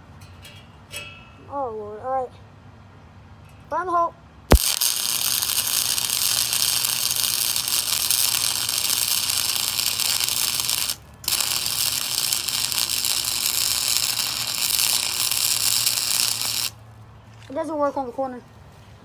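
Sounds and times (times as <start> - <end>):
welding arc crackling: 4.5 - 16.9.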